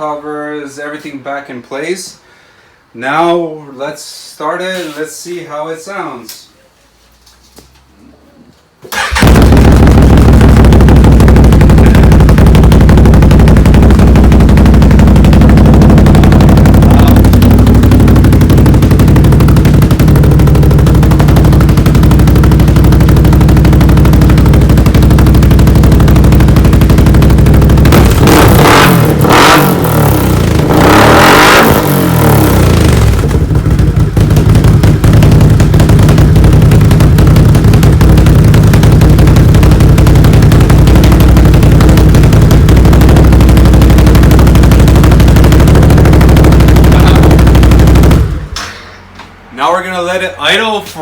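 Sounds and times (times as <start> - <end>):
atv engine idling and revving: 9.0 - 48.6.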